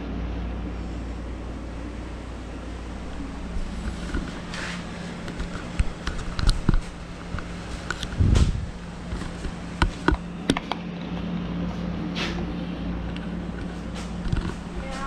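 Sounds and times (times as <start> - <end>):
low steady hum: 0.0 - 15.0
heavy low thump: 8.2 - 8.8.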